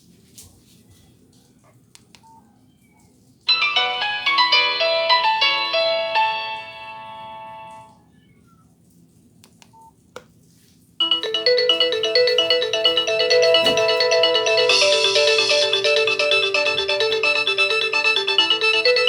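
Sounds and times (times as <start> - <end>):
polyphonic ringtone melody: 3.5 - 7.9, 11.0 - 19.0.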